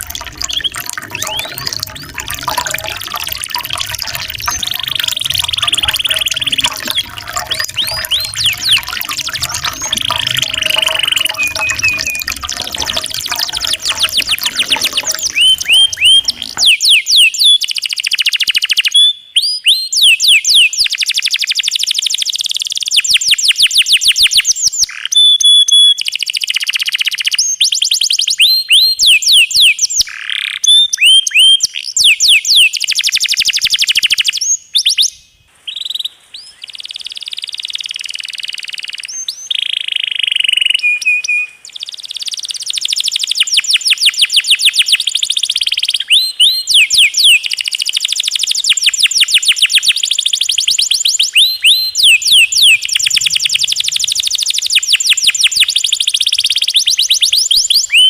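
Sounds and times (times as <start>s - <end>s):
trickling water: 0.0s - 17.2s, 42.8s - 57.9s
canary singing: 0.0s - 17.3s.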